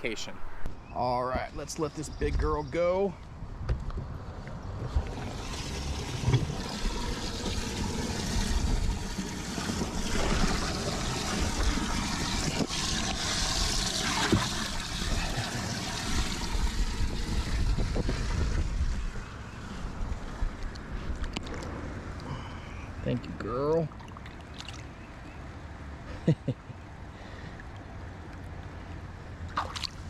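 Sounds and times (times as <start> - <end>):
wind rumbling on microphone: 3.4 - 22.2
water splashing and trickling: 4.8 - 22.8, 23.5 - 25.5, 27.2 - 30.0.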